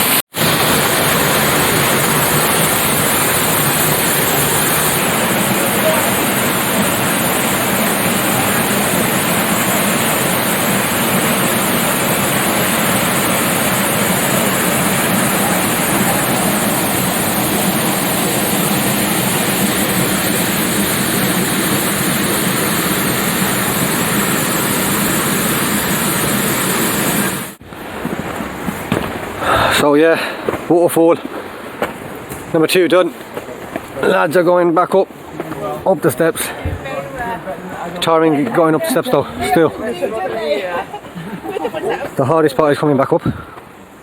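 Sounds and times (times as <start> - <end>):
waterfall roaring: 0.0 - 44.0.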